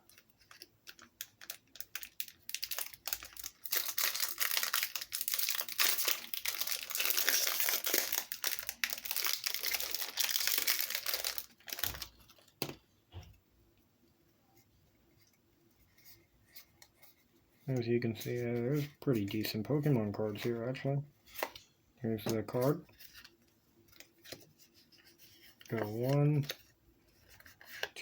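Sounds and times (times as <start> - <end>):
packaging crinkling as torn open: 0.1 - 12.5.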